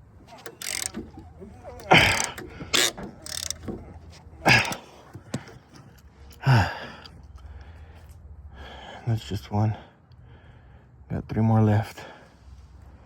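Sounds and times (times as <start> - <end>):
man groaning: 1.6 - 2.4.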